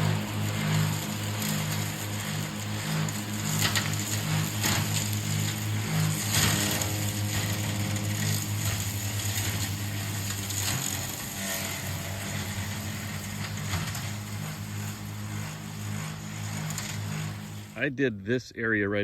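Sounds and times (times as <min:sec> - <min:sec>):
electric lawn mower motor hum: 0:00.0 - 0:17.8
crackling clicks of cutting grass: 0:00.7 - 0:15.5.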